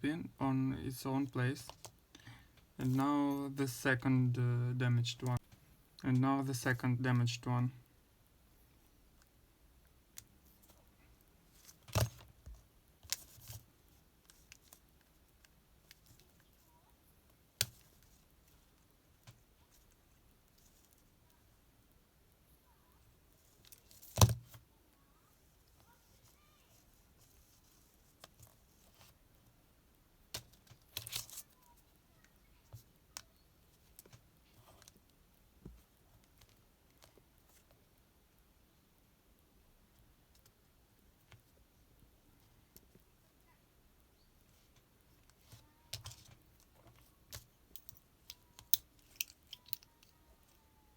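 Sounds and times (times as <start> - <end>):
small clicks and knocks: 44.7 - 50.6.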